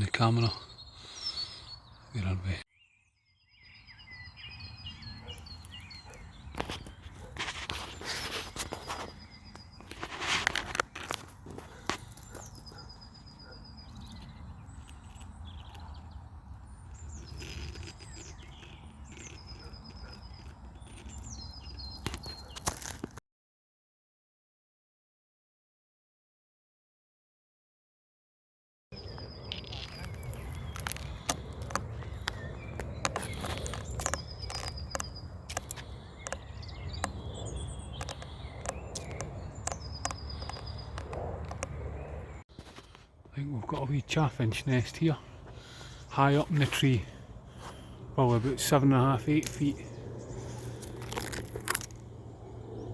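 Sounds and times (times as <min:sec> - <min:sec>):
songbird trilling: 0:00.1 - 0:22.6, 0:29.0 - 0:42.4
thin high bird calls: 0:03.6 - 0:23.1, 0:29.0 - 0:43.0
sharp clicks and crackles: 0:05.3 - 0:12.8, 0:16.9 - 0:23.2, 0:29.5 - 0:43.0, 0:50.5 - 0:52.1
low rumble of wind: 0:29.0 - 0:52.9.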